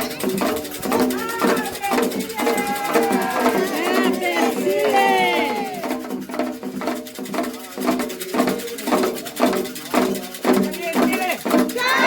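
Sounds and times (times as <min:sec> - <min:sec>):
voices singing: 0:00.0 - 0:06.2, 0:11.7 - 0:12.0
hand drum strokes: 0:00.0 - 0:12.0.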